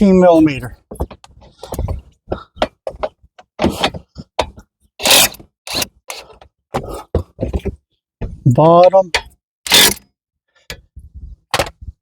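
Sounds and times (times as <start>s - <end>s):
wrench clicking and scraping on metal: 5.0s - 6.4s, 9.2s - 10.0s.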